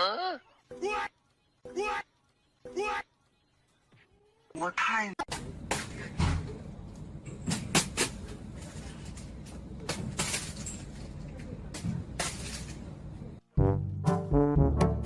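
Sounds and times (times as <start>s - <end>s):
steady background noise: 0.4s - 13.5s
brass music with trombone: 13.5s - 15.0s.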